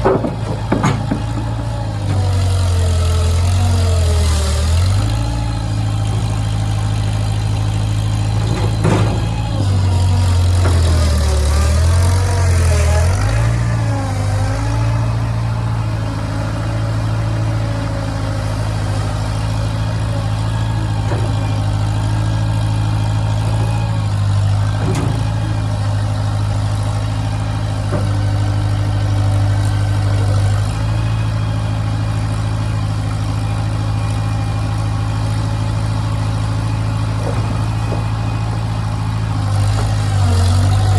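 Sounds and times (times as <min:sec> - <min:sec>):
engine running: 0:00.0 - 0:40.9.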